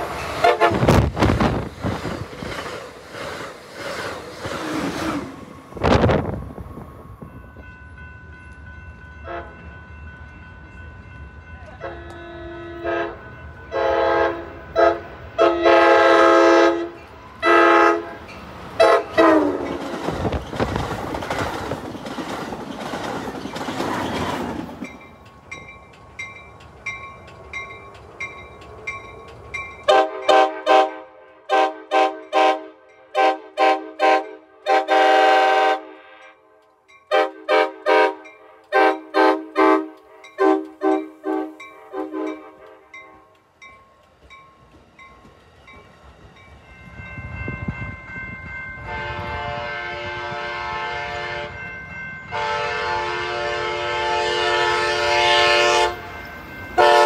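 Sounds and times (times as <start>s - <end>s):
train horn blasts: 0.0s - 1.1s, 9.2s - 9.7s, 11.7s - 18.2s, 18.8s - 19.7s, 29.8s - 36.5s, 37.1s - 43.2s, 48.8s - 51.7s, 52.3s - 56.2s, 56.8s - 57.0s
train wheel and wind noise: 0.0s - 57.0s.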